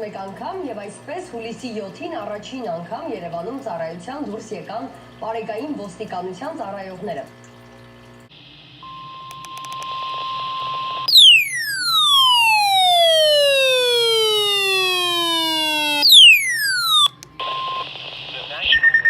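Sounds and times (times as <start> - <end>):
falling whistle: 8.8 - 17.8
steady warning alarm tone: 8.8 - 17.8.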